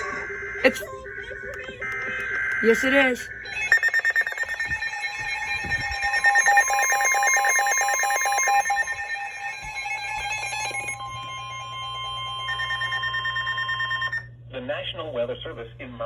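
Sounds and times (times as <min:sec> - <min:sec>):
pulsing alarm tones: 0:00.0 - 0:14.3
steady alert tone: 0:00.6 - 0:00.9, 0:02.6 - 0:03.3.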